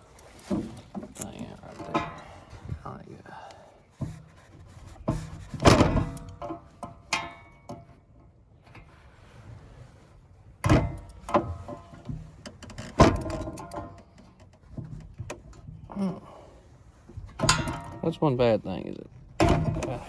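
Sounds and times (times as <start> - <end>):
metal rattling and handling: 0.0 - 2.9, 3.9 - 9.0, 10.6 - 20.0
hand tools clanking on metal: 0.2 - 2.7, 5.1 - 7.9, 10.7 - 16.5, 17.2 - 18.6, 19.3 - 20.0.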